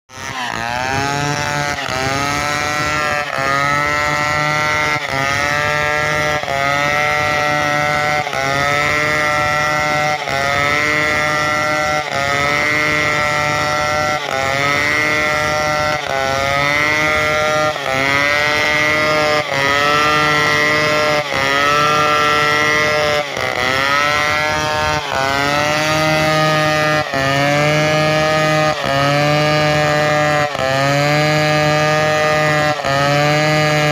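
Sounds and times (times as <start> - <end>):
chainsaw cutting timber: 0.1 - 33.9.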